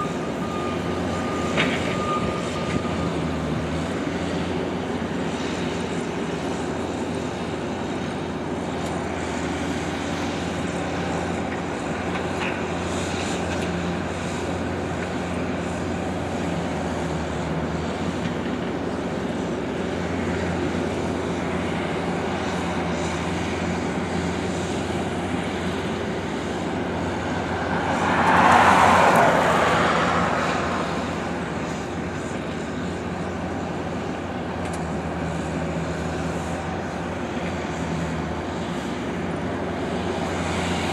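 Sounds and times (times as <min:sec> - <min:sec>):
diesel engine running: 0:00.0 - 0:40.9
loud rushing swell: 0:26.7 - 0:32.0.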